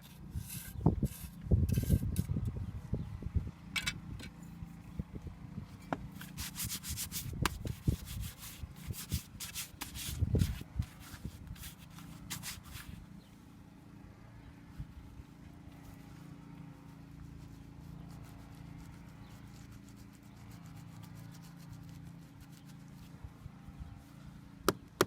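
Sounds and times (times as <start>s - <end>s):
scraping and rubbing strokes: 0.0s - 2.3s, 5.7s - 13.1s, 15.7s - 23.3s.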